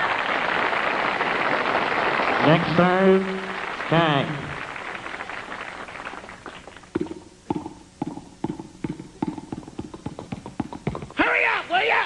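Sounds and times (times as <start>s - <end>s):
mouth-made pops: 6.7s - 11.2s.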